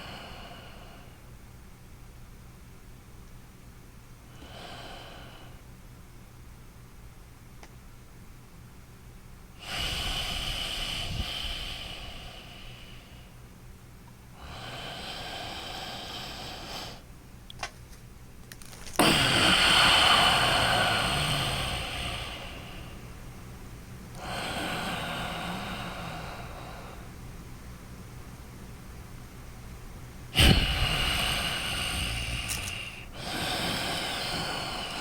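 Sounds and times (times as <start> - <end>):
man breathing through nose: 9.6 - 13.4, 14.4 - 17.1, 18.6 - 23.2, 24.2 - 27.1, 30.4 - 35.0.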